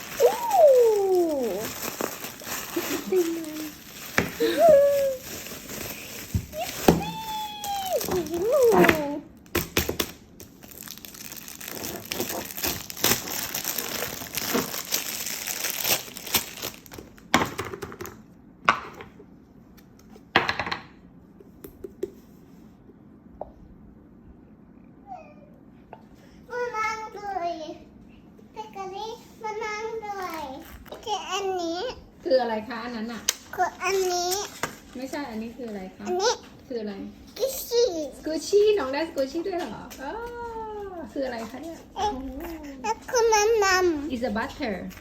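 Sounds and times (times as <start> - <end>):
plastic packaging crinkling: 0.0 - 17.3, 30.2 - 31.0
child vocal sound: 0.1 - 1.8, 4.4 - 5.3.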